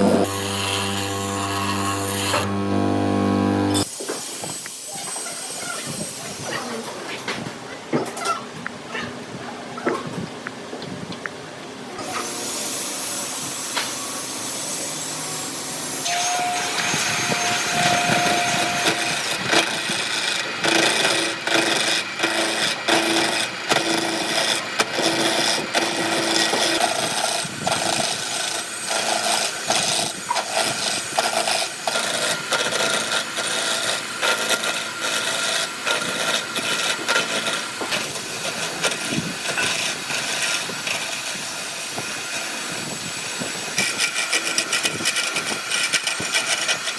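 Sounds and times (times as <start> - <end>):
wood scraping and rasping: 0.0 - 3.9, 16.3 - 46.9.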